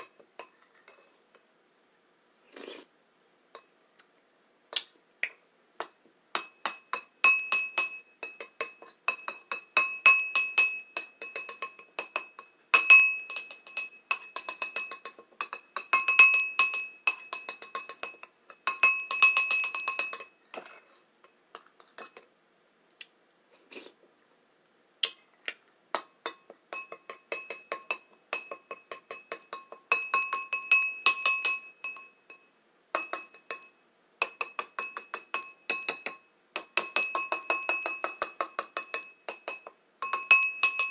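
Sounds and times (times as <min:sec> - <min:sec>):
bowl tapped ringing: 0:06.4 - 0:21.4, 0:26.2 - 0:40.9.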